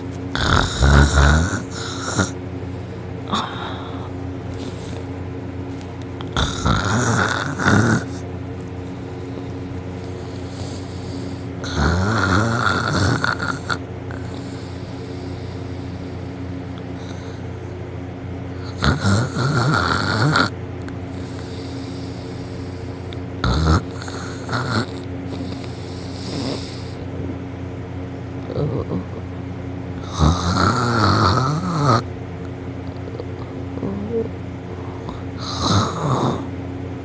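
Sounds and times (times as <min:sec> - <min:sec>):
person snoring loudly: 0:00.3 - 0:02.4, 0:03.3 - 0:05.0, 0:06.3 - 0:08.2, 0:10.2 - 0:15.6, 0:18.6 - 0:20.5, 0:23.4 - 0:27.0, 0:30.0 - 0:32.1, 0:35.0 - 0:36.5.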